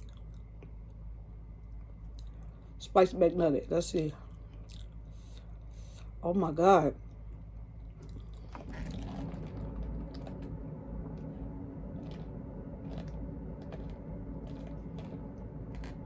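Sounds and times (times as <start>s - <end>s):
person chewing: 0.0s - 0.8s, 4.3s - 6.2s, 7.8s - 10.5s, 11.9s - 16.0s
steady low hum: 0.0s - 16.0s.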